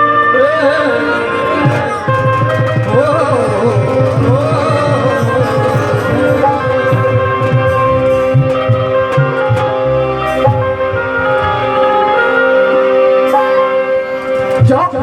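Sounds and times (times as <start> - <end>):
hand drum beats: 0.0 - 15.0
wavering gliding melody: 0.0 - 15.0.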